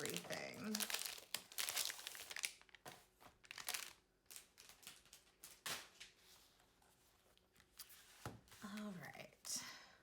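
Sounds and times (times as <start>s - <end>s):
packaging crinkling and rustling: 0.0s - 6.2s.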